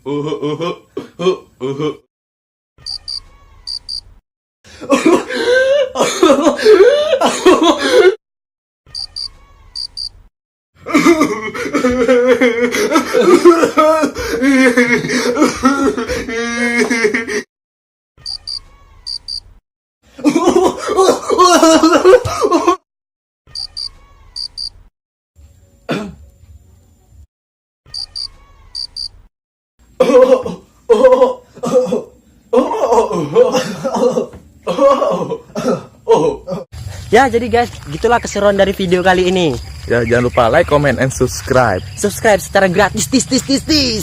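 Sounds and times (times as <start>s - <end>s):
person clearing throat: 0.0s - 2.1s, 25.9s - 26.2s, 30.0s - 36.7s
cricket chirp sound effect: 2.8s - 4.1s, 8.9s - 10.2s, 18.2s - 19.5s, 23.5s - 24.8s, 27.9s - 29.2s
cricket chirps: 2.8s - 4.1s, 8.9s - 10.2s, 18.2s - 19.5s, 23.5s - 24.8s, 27.9s - 29.2s, 37.7s - 44.0s
person coughing: 4.9s - 8.2s, 25.9s - 26.2s, 30.0s - 36.7s.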